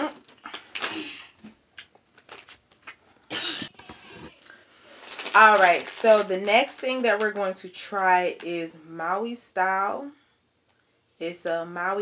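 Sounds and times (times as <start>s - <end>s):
packaging crinkle: 0.1s - 1.2s, 1.8s - 7.5s
snack packaging rustling: 0.1s - 7.7s.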